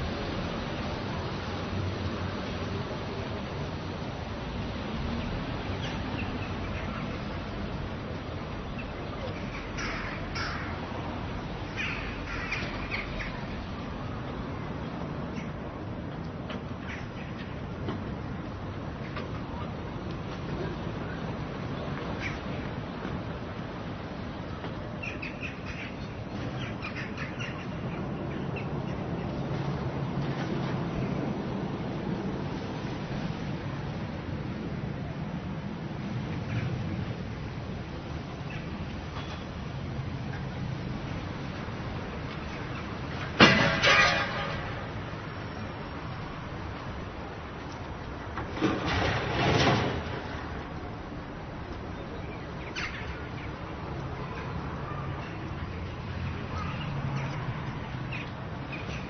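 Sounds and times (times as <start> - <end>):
town background hum: 0.0 - 59.0
bird calling: 8.7 - 10.8, 11.7 - 13.6, 25.0 - 29.0, 51.9 - 53.6.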